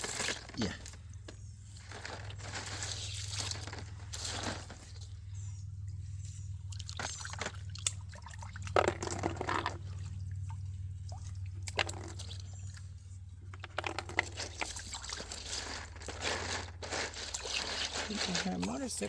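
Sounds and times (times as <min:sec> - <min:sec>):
water pouring and splashing: 0:01.8 - 0:05.0, 0:06.7 - 0:12.9, 0:14.0 - 0:19.0.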